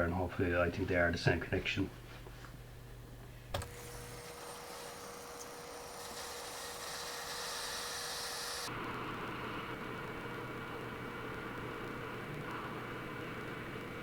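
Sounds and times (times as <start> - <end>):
hot-air station hissing: 3.7 - 14.0
faint whine: 8.7 - 14.0.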